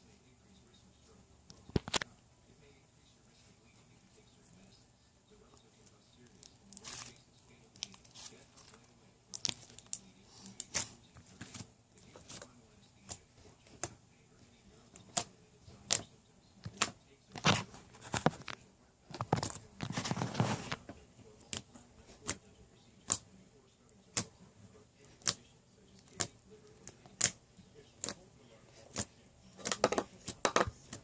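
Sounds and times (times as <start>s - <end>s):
slime squelching: 6.2s - 12.5s, 25.0s - 25.4s.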